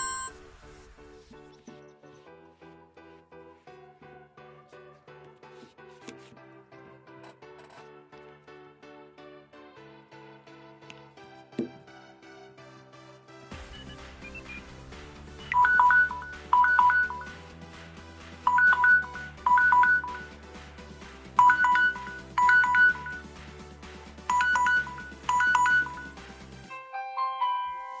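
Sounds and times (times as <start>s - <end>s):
phone ringtone chime: 0.0s - 0.5s, 15.4s - 17.4s, 18.5s - 20.3s, 21.4s - 23.2s, 24.3s - 28.0s.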